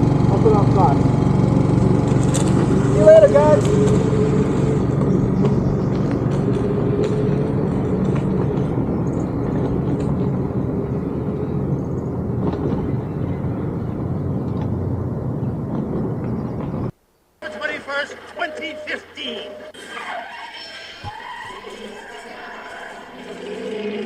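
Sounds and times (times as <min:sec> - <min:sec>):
motor humming: 0:00.0 - 0:16.9.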